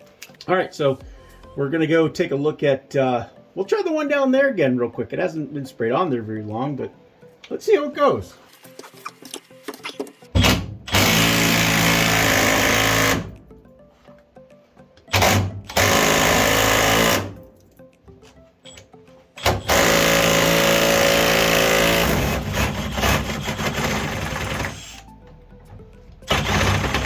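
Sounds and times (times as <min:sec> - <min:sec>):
impact wrench hammering bolt: 0:19.4 - 0:25.0.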